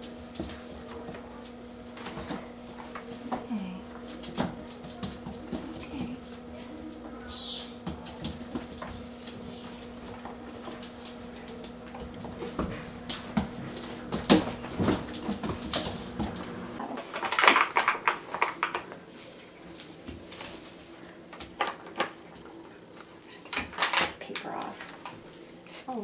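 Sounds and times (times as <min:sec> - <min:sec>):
steady low hum: 0:00.0 - 0:17.3
clicks and knocks of objects: 0:07.8 - 0:19.0, 0:21.3 - 0:22.6, 0:23.4 - 0:25.2.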